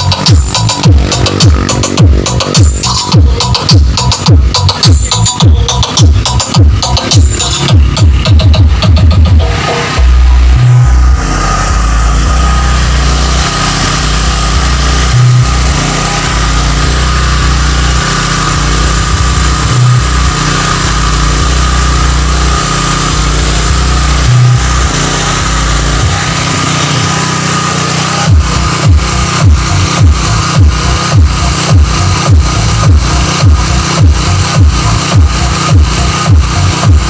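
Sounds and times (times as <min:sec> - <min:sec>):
punchy bass hit: 0:00.0 - 0:26.6, 0:28.3 - 0:37.0
deep sub-bass notes: 0:00.0 - 0:37.0.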